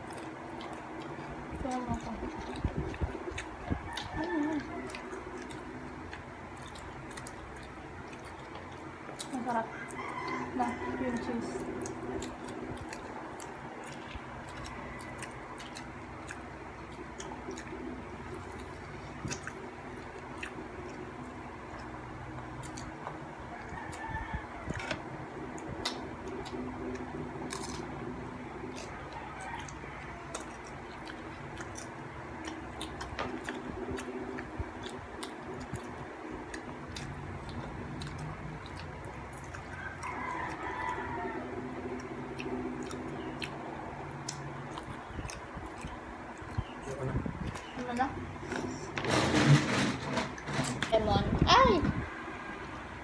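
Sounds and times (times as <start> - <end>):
person chewing bread: 0.0 - 48.9
low steady hum: 0.0 - 53.0
chickens clucking: 0.1 - 27.2.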